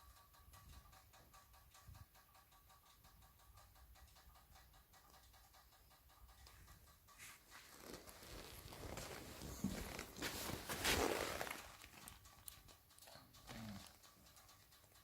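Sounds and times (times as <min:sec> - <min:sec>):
cooling engine ticking: 0:00.0 - 0:07.5
rustling and handling noise: 0:06.4 - 0:14.1.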